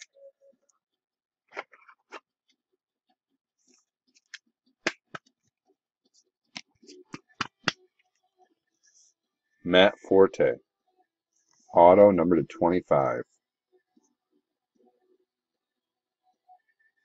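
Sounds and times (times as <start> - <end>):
plastic sleeve clicks and taps: 6.6 - 7.8.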